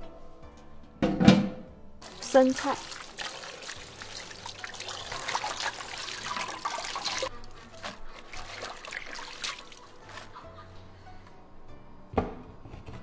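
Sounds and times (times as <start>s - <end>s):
tap water running into sink: 2.0s - 9.8s.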